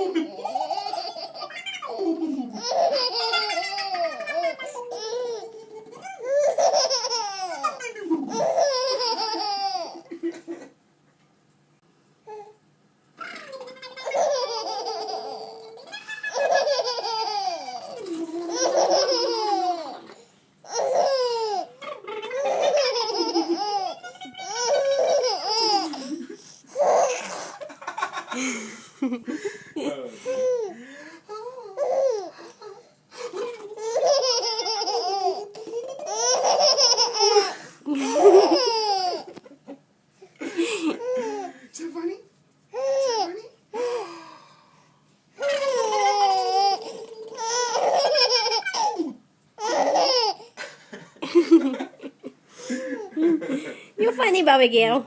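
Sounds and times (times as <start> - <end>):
baby laughing: 0.0 - 10.5, 13.2 - 28.3, 30.3 - 39.5, 45.4 - 50.7.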